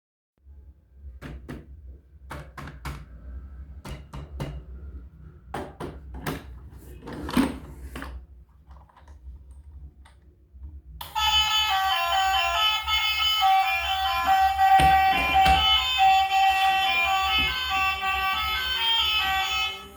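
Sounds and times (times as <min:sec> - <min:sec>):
music: 0:11.0 - 0:19.9.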